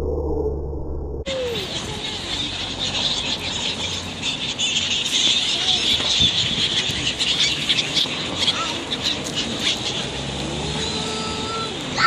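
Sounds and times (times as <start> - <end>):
muffled low rumble: 0.0 - 1.3
birds chirping and calling: 1.3 - 12.0
steady outdoor hiss: 1.3 - 12.0.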